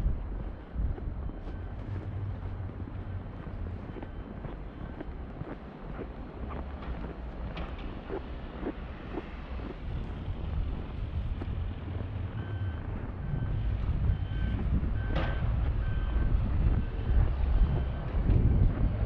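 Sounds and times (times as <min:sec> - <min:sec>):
wind on microphone: 0:00.0 - 0:04.5, 0:07.1 - 0:19.0
low engine rumble: 0:00.0 - 0:19.0
reversing alarm beeping: 0:00.0 - 0:19.0.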